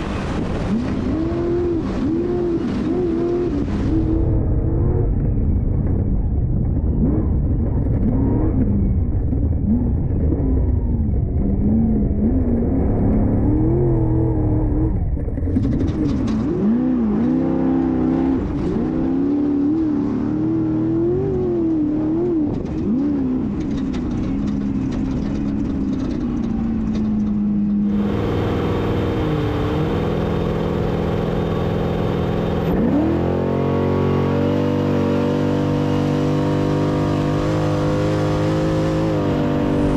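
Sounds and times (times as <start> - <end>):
race car engine revving: 9.6 - 39.9.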